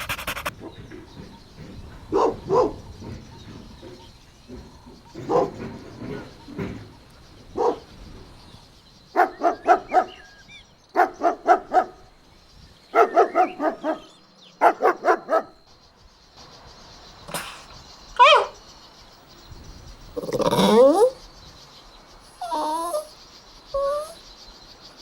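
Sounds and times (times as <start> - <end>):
dog barking: 2.1 - 3.2, 5.2 - 5.8, 7.5 - 7.9, 9.1 - 12.1, 12.9 - 15.6, 18.2 - 18.6, 22.4 - 23.1, 23.8 - 24.2.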